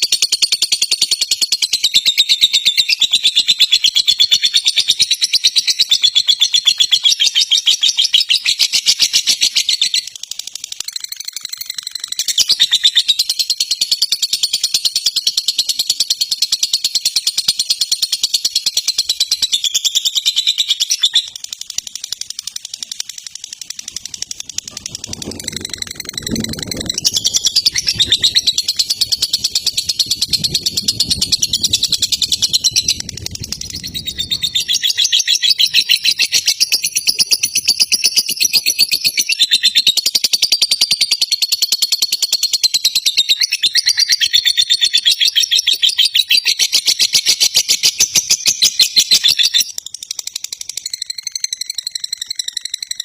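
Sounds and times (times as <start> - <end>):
lovebird chattering chirps: 0.0 - 53.0
low rumble: 24.6 - 34.7.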